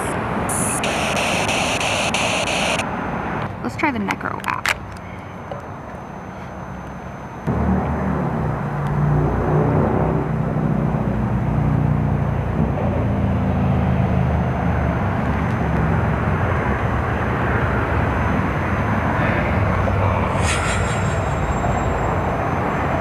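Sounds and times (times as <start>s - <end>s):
static hiss: 0.0s - 2.8s.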